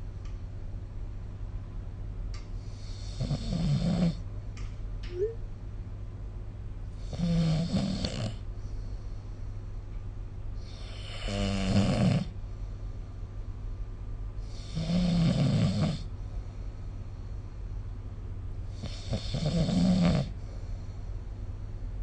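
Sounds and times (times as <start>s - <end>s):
steady low hum: 0.0s - 22.0s
person snoring: 10.7s - 12.3s, 14.6s - 16.1s, 18.8s - 20.3s.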